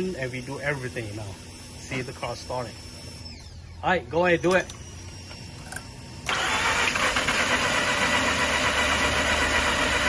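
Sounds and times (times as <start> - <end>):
engine starter cranking: 6.2 - 10.0.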